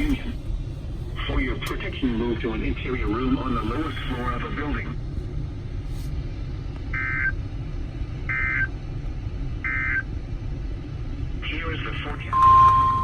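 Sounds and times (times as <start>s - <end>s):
low rumble: 0.0s - 13.0s.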